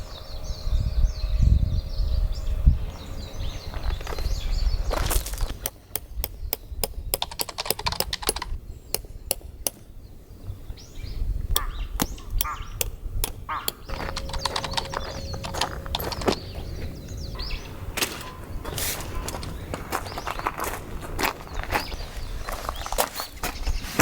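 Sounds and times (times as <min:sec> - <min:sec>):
low rumble: 0:00.0 - 0:07.1
small bird calls: 0:00.0 - 0:24.0.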